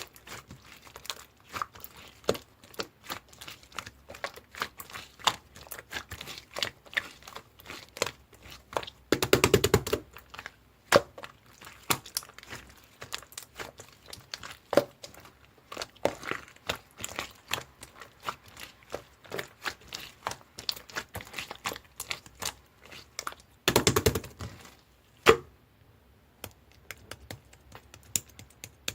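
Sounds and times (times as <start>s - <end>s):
slime squished by hand: 0.0s - 25.5s.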